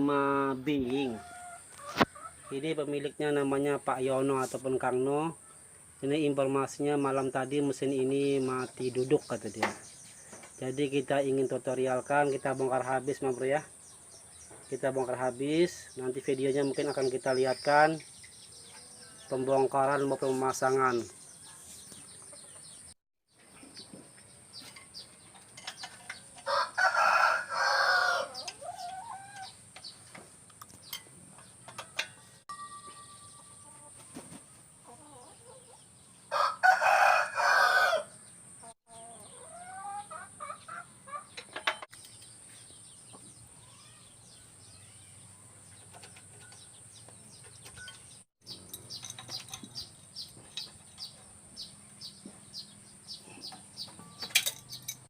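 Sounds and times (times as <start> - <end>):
rooster crowing: 26.4 - 28.5, 36.3 - 38.2.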